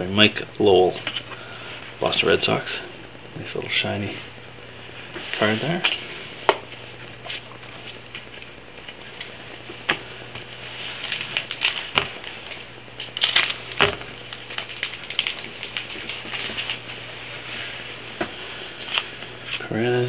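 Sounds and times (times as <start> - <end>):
cards being handled: 10.4 - 16.9
wrappers crinkling and tearing: 10.4 - 17.1.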